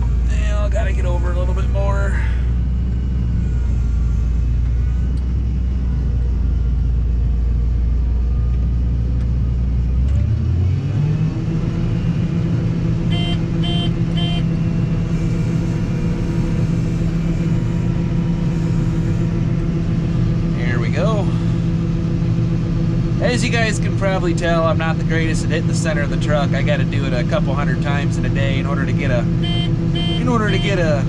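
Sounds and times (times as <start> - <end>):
harvester engine drone: 0.0 - 31.0
short beeps: 13.1 - 14.4, 29.4 - 30.9.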